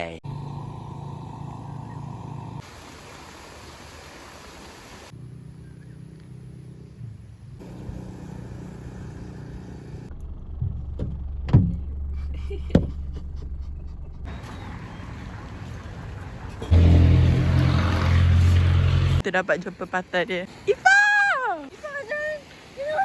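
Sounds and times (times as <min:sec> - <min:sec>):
vehicle engine and road hum: 0:00.0 - 0:03.0, 0:05.1 - 0:19.8.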